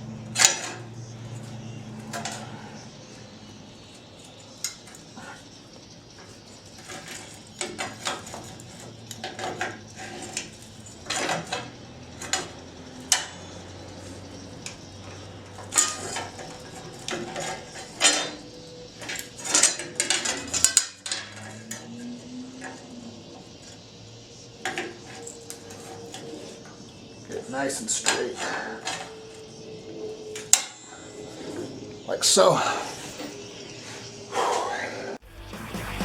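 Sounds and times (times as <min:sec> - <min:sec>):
steady low hum: 0:00.0 - 0:20.9
metallic clanks of steel parts: 0:00.0 - 0:23.8, 0:24.5 - 0:29.5.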